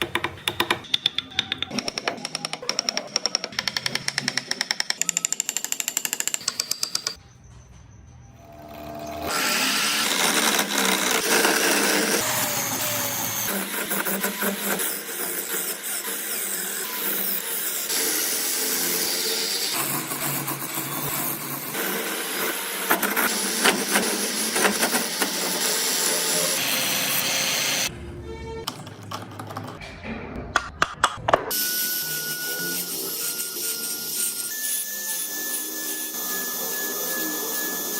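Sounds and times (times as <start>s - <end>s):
power carving tool grinding wood: 8.6s - 27.9s, 31.6s - 37.9s.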